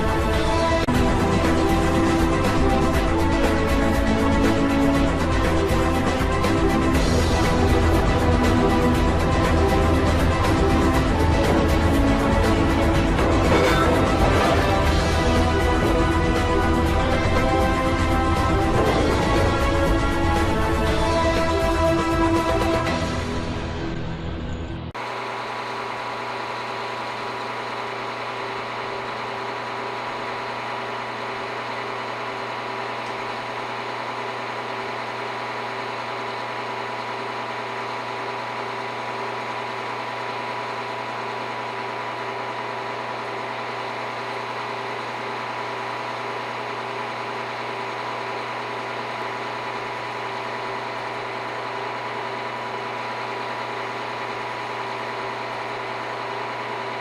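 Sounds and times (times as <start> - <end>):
fast even pulsing: 0.0 - 24.6
constant high whine: 0.0 - 57.0
heavy machine engine running: 0.0 - 57.0.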